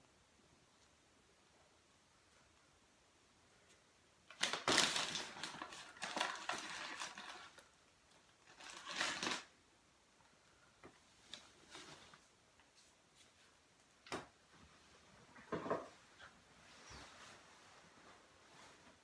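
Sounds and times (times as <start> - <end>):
rummaging rustling and clattering: 4.3 - 7.7, 8.4 - 9.5.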